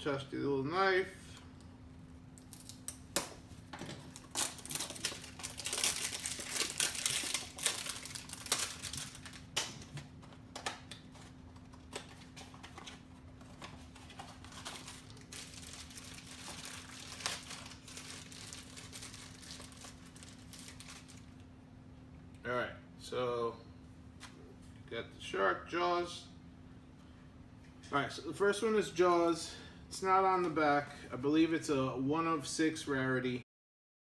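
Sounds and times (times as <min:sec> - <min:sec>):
faint steady hum: 0:00.0 - 0:33.4
packaging crinkling and tearing: 0:02.4 - 0:03.3, 0:04.0 - 0:21.4.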